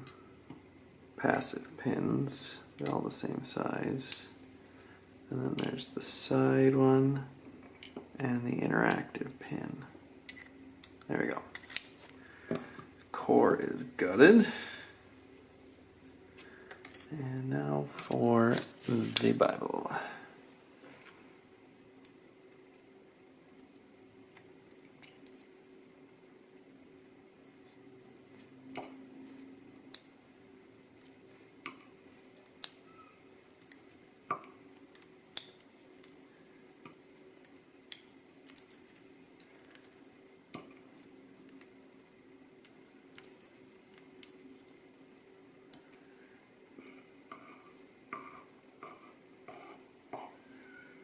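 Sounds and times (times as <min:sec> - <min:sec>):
faint steady hum: 0:00.0 - 0:51.0
small lock parts clinking: 0:08.6 - 0:12.1, 0:37.9 - 0:39.9, 0:43.1 - 0:44.8.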